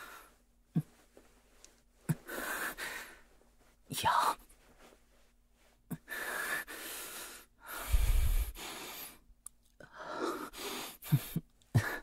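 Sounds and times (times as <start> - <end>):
man breathing close to microphone: 0.0 - 1.0, 5.9 - 12.0
breath blowing onto microphone: 7.8 - 8.6.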